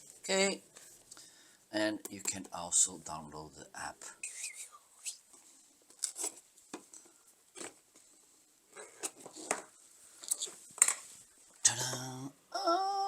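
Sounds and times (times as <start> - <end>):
packaging rustling and scraping: 5.9 - 7.8.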